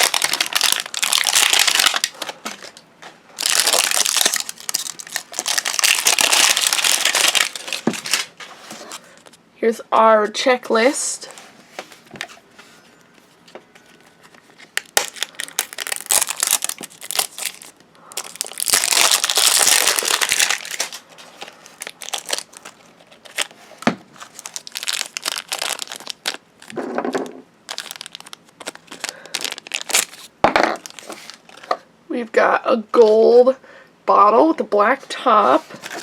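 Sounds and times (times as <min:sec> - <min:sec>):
packaging crinkling and tearing: 0:00.0 - 0:02.8, 0:03.4 - 0:09.4, 0:13.8 - 0:26.8, 0:27.7 - 0:31.7, 0:35.8 - 0:36.0.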